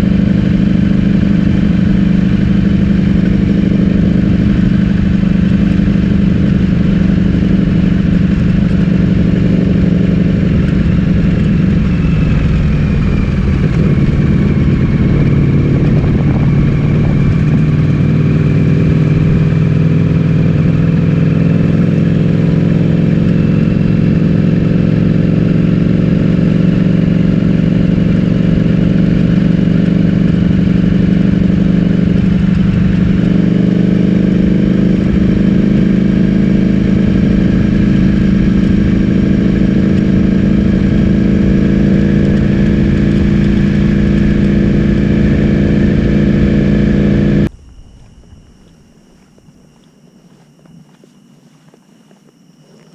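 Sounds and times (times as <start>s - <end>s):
motorcycle engine running: 0.0s - 52.9s.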